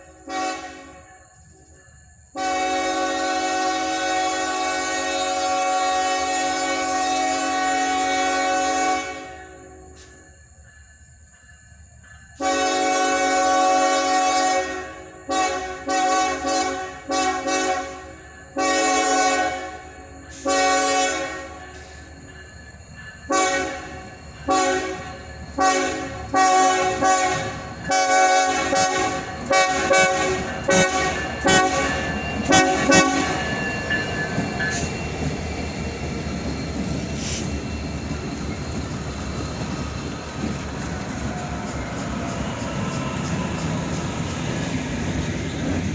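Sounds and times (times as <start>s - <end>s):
train rumble and wheel clatter: 0.0s - 45.9s
locomotive air horn blasts: 0.2s - 1.2s, 2.4s - 10.1s, 12.4s - 21.7s, 23.3s - 33.6s.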